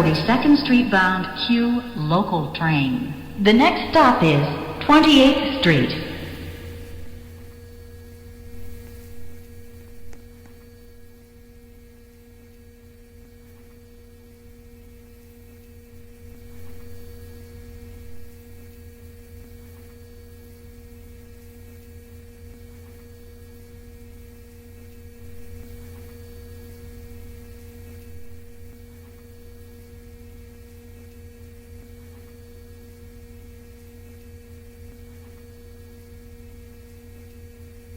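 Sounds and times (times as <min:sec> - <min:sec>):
electrical hum two tones: 0:00.0 - 0:07.2.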